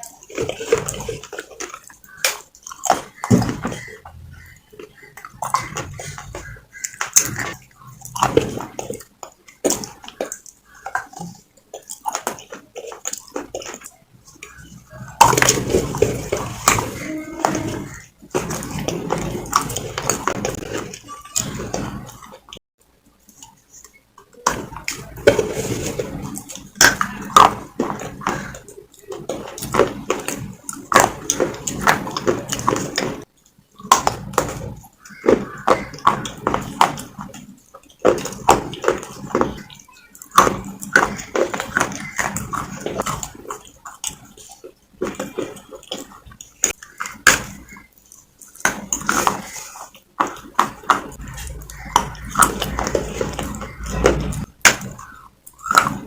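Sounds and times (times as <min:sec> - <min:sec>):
mouth noises: 0:00.0 - 0:22.6, 0:23.2 - 0:56.0
clay crunching as chewed: 0:24.8 - 0:56.0.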